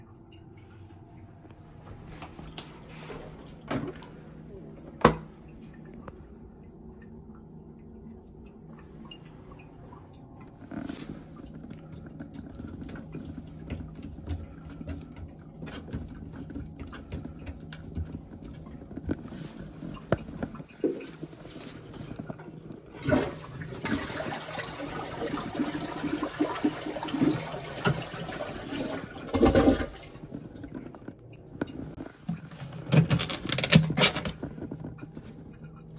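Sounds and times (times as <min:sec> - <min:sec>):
toilet flushing: 0:00.0 - 0:06.7, 0:07.7 - 0:34.4
handling knocks and clicks: 0:30.7 - 0:35.4.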